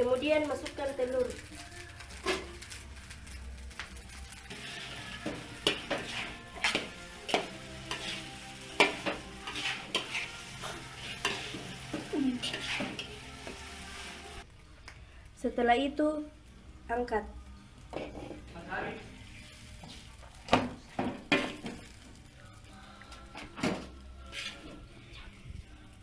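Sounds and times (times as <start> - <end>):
egg sizzling in a frying pan: 0.0 - 14.6, 15.4 - 25.0
utensil scraping and knocking pan: 4.5 - 13.1.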